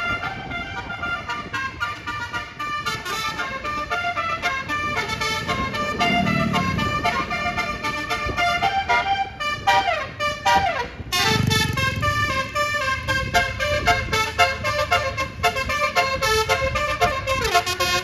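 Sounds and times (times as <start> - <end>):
bus engine rumble: 0.0 - 18.0
multi-tone bus horn tune: 0.0 - 18.0.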